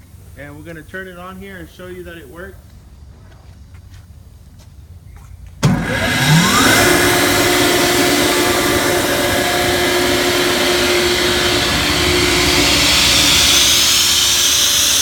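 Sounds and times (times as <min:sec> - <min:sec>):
air compressor motor whining: 0:05.6 - 0:15.0
compressor hiss: 0:05.7 - 0:15.0.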